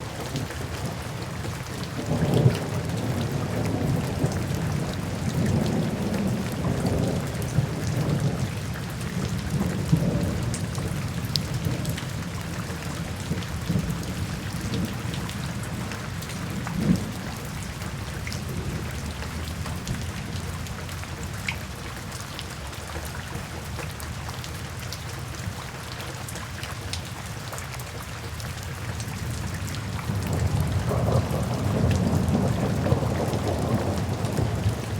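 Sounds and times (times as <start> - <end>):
steady rain falling: 0.0 - 34.9
distant thunder rumbling: 29.4 - 34.9.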